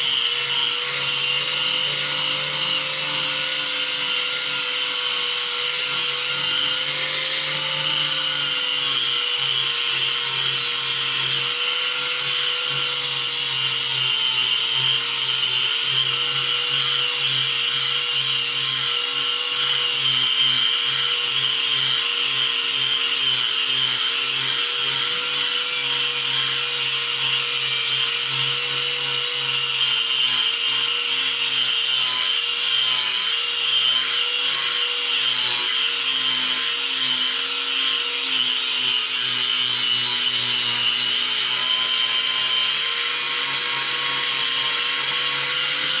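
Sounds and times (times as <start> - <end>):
power sander on wood: 0.0 - 46.0.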